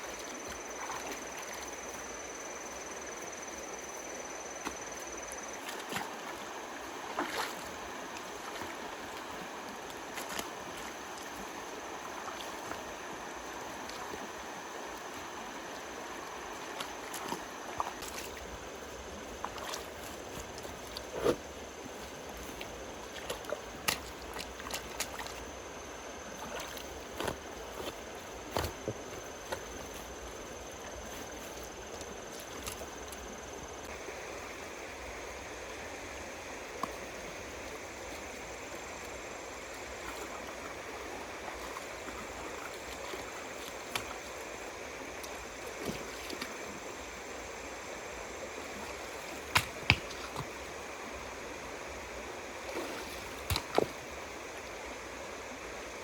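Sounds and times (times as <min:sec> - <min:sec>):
running water: 0:00.0 - 0:56.0
knocks and splashes: 0:04.6 - 0:06.4, 0:07.0 - 0:09.3, 0:16.6 - 0:18.4, 0:19.4 - 0:21.5, 0:22.4 - 0:25.4, 0:26.4 - 0:30.0, 0:39.9 - 0:44.4, 0:45.2 - 0:46.6, 0:48.7 - 0:50.7, 0:52.6 - 0:54.2.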